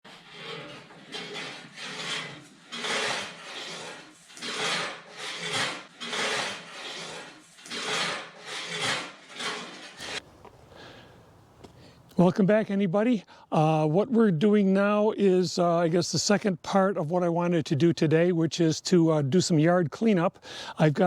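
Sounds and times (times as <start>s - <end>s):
rasping strokes on wood: 0.1s - 11.0s.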